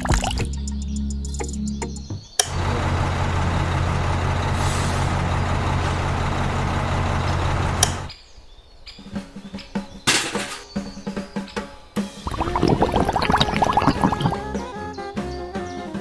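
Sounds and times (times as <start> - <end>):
click: 2.4 - 2.6, 7.8 - 8.1
heavy vehicle engine running: 2.5 - 8.1.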